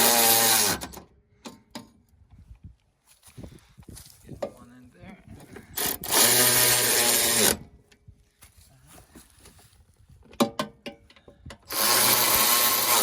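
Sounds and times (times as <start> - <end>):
power tool running: 0.0 - 1.0, 5.8 - 7.7, 11.7 - 13.0.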